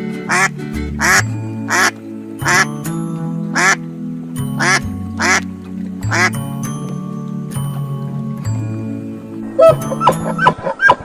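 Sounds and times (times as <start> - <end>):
background music with held notes: 0.0 - 11.0
duck quacking: 0.3 - 2.7, 3.5 - 3.8, 4.6 - 5.4, 6.1 - 6.4.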